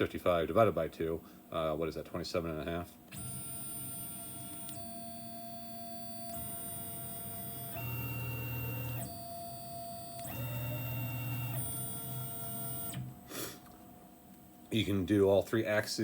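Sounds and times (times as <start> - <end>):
mill drive motors whining: 3.1 - 13.2.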